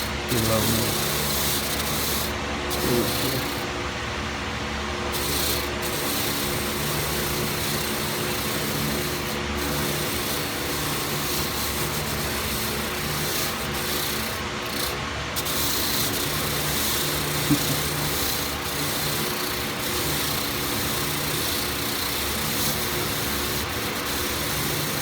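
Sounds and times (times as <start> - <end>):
wire wheel scrubbing metal: 0.0 - 3.7, 5.1 - 25.0
motor hum: 0.0 - 25.0.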